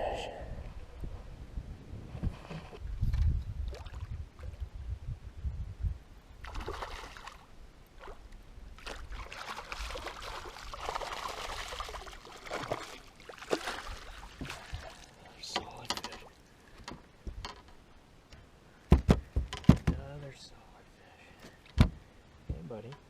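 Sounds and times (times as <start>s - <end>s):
water splashing and trickling: 2.5s - 4.8s, 6.4s - 16.8s.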